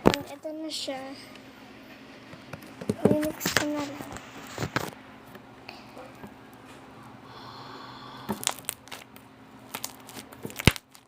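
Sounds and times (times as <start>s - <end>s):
slime crackling and popping: 8.3s - 11.0s
slime squishing: 8.3s - 11.0s.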